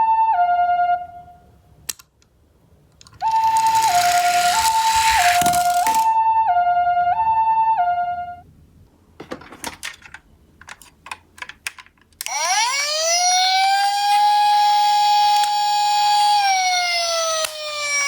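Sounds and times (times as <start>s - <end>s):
sharp clicks: 1.9s - 2.3s, 3.0s - 6.1s, 10.7s - 18.0s
two-tone ambulance siren: 12.3s - 18.0s
wailing siren: 12.3s - 18.0s.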